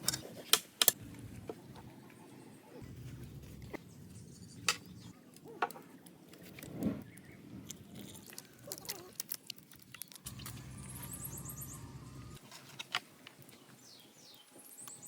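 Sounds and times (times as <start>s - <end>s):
low steady hum: 10.3s - 12.4s.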